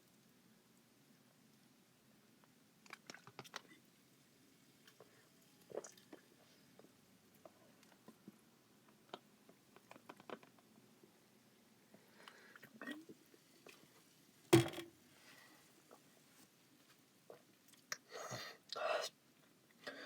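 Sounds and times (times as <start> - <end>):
person sipping and swallowing: 4.9 - 6.9.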